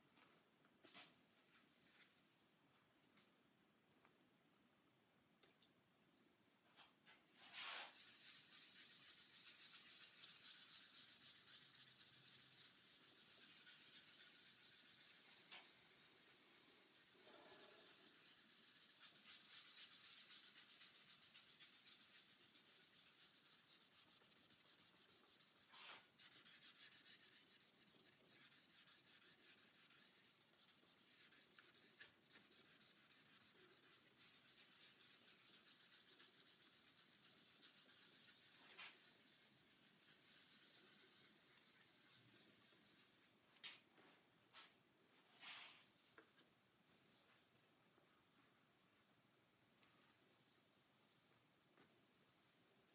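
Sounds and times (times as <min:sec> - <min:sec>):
wet sandpaper hissing on lacquer: 0:07.9 - 0:43.3.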